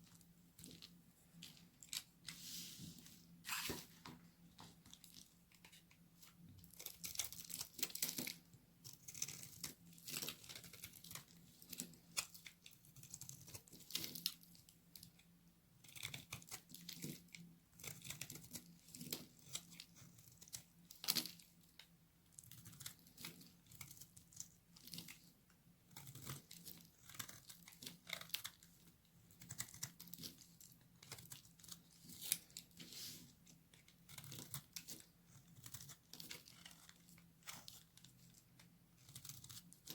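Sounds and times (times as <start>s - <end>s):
knife cutting dry soap: 4.9s - 15.2s, 15.8s - 39.9s.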